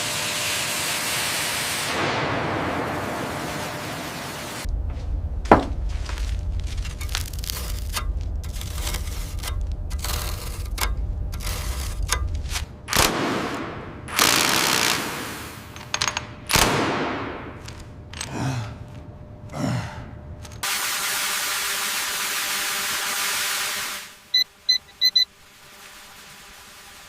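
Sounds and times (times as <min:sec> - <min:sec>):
low rumble: 0:02.2 - 0:14.2
hissing bursts: 0:12.9 - 0:15.9, 0:20.6 - 0:27.0.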